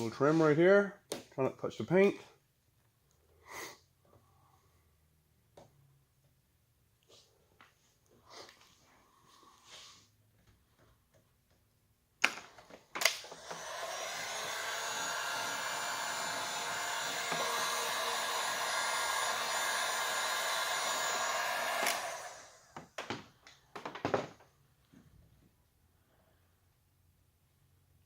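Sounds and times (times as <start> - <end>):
hot-air blower running: 13.1 - 22.9.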